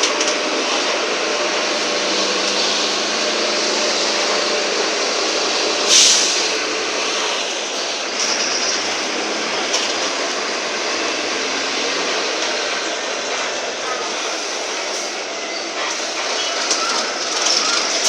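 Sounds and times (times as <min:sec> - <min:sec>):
bus diesel engine running: 0:00.0 - 0:18.0
air brake hiss: 0:01.7 - 0:09.1.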